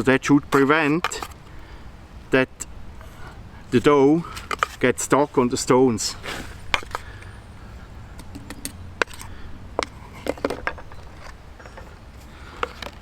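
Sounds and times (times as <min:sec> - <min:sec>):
low steady rumble: 0:00.0 - 0:13.0
stones clicking and knocking: 0:06.6 - 0:07.3, 0:08.2 - 0:13.0.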